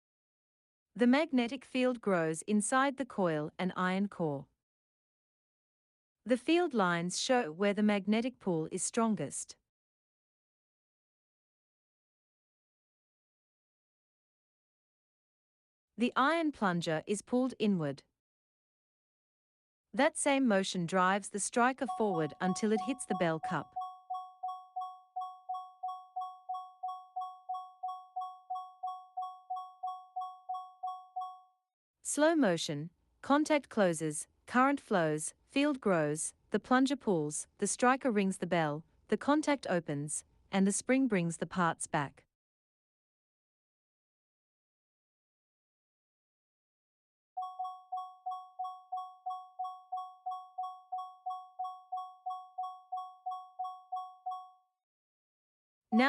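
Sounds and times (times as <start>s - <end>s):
doorbell ringing: 21.9s - 31.5s, 47.4s - 54.6s
electric doorbell ringing: 47.4s - 54.6s.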